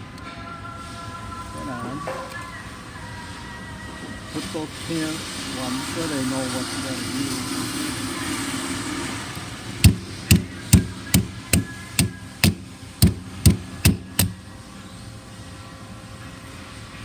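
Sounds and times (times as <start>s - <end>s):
hammer tapping pins: 9.8s - 14.4s.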